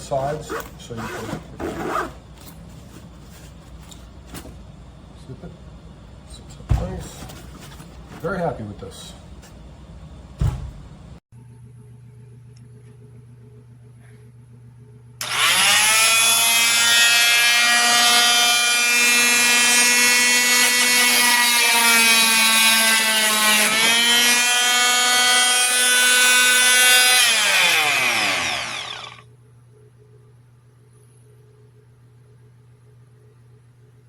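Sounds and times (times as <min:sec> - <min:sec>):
oscillating multi-tool whining: 0:15.2 - 0:29.2.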